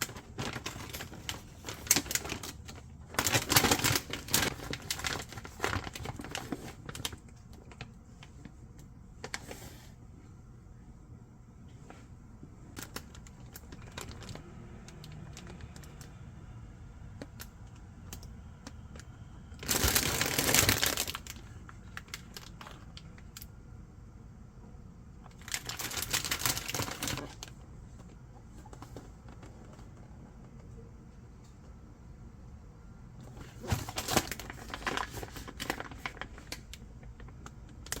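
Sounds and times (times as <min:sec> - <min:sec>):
rustling or crinkling: 0:00.0 - 0:10.0, 0:11.7 - 0:16.1, 0:18.1 - 0:23.5, 0:25.2 - 0:31.8, 0:33.2 - 0:38.0.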